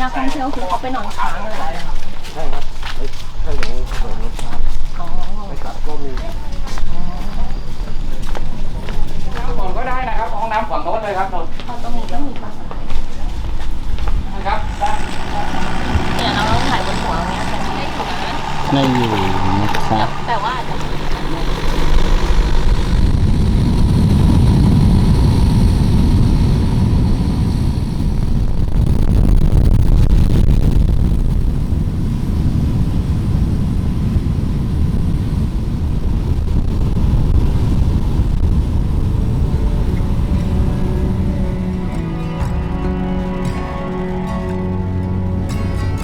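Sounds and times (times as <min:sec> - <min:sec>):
motorboat engine drone: 0:13.9 - 0:29.6, 0:30.7 - 0:45.9.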